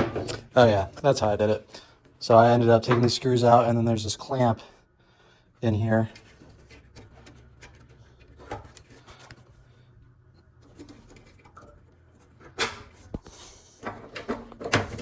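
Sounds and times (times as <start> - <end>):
clicks and knocks of parts: 10.6 - 15.0.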